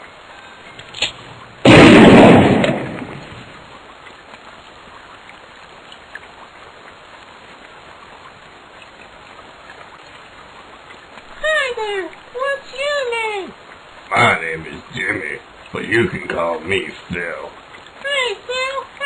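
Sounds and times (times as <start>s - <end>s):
rain hiss: 0.0s - 19.0s
loud crash: 1.6s - 3.3s.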